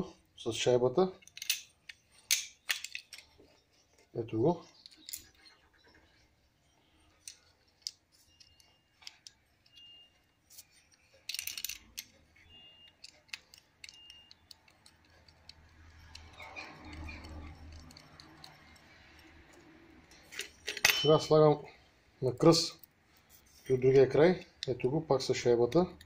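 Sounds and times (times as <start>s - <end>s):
small bolts clicking and tapping: 1.2s - 3.3s, 7.2s - 21.1s.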